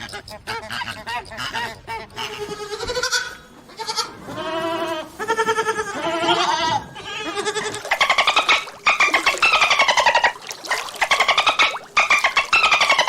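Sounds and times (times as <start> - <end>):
goats bleating: 2.2 - 7.9.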